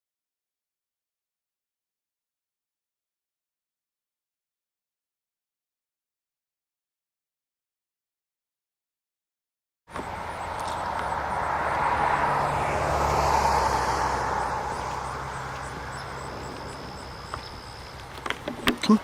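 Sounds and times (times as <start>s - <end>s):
engine passing by: 9.9s - 18.7s.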